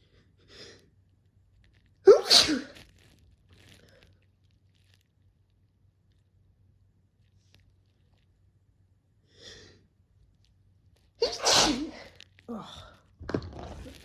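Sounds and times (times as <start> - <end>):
person sneezing: 2.1 - 2.8, 11.2 - 12.2.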